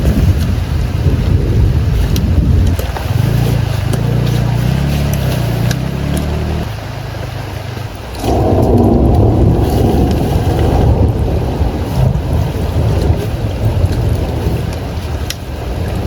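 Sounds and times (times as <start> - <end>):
rainstorm low rumble: 0.0 - 16.0
sharp raindrop ticks: 1.6 - 16.0.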